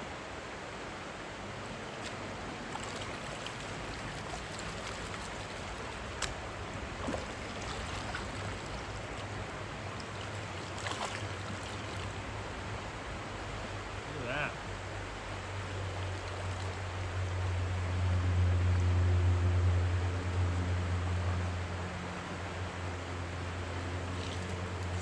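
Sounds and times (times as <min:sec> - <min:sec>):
river water running: 0:00.0 - 0:25.0.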